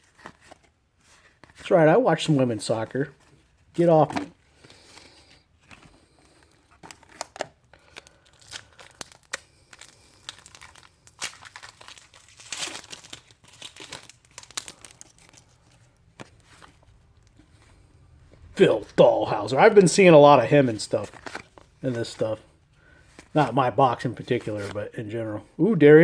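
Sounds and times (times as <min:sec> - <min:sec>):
wrapper crinkling and tearing: 0:06.3 - 0:17.4, 0:18.6 - 0:22.4.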